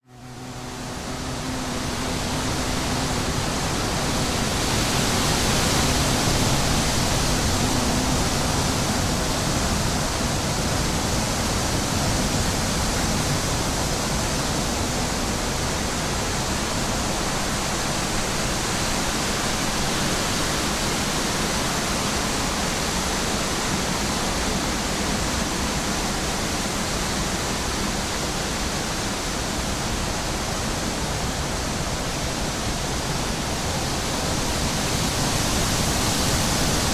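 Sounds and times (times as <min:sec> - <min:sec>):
wind rushing over microphone: 0:00.0 - 0:36.9
bee buzzing: 0:00.1 - 0:10.4.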